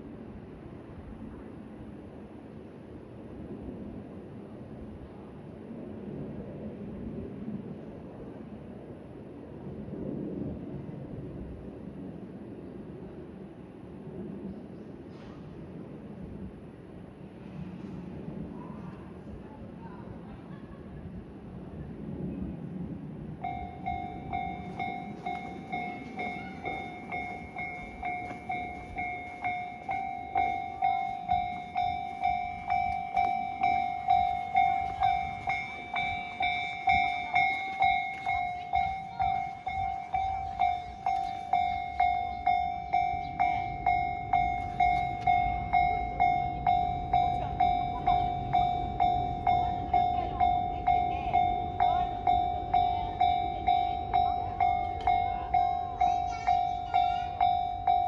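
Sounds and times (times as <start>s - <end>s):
level crossing warning bell: 23.2s - 58.0s.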